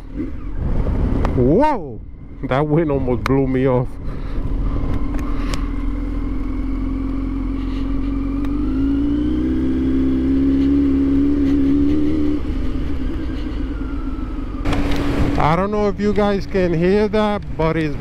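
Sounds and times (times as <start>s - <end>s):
wind rushing over microphone: 0.0s - 5.8s
motorcycle engine pulling away: 5.3s - 15.9s.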